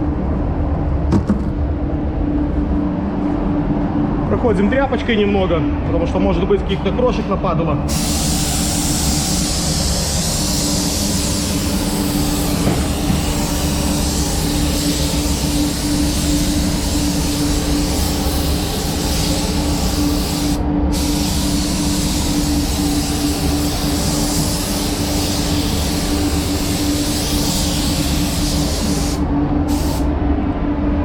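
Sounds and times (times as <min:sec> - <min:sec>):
paint spray gun hissing: 0:07.9 - 0:30.0.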